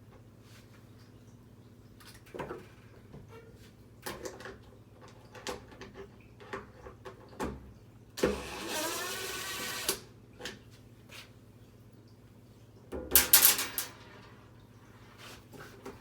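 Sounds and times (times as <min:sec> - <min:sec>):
power drill whining: 0:08.2 - 0:10.0
clicks and knocks of parts: 0:13.1 - 0:14.1.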